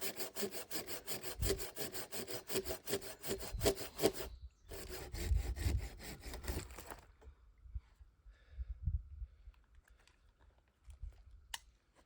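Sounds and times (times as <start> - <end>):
hand saw cutting wood: 0.0 - 7.0.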